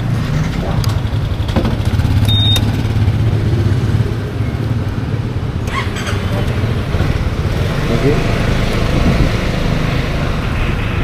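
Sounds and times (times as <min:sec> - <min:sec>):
scooter engine running: 0:00.0 - 0:11.0
short high beep: 0:02.3 - 0:02.6.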